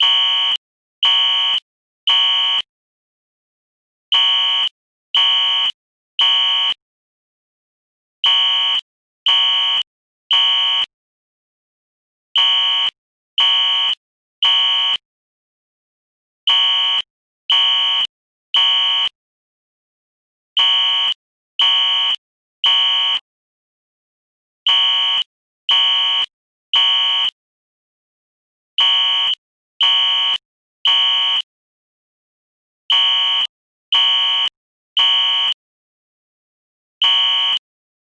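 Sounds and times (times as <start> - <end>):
fire alarm beeping: 0.0 - 2.7, 4.1 - 6.8, 8.2 - 10.9, 12.4 - 15.0, 16.5 - 19.2, 20.6 - 23.2, 24.7 - 27.4, 28.8 - 31.5, 32.9 - 35.6, 37.0 - 37.6.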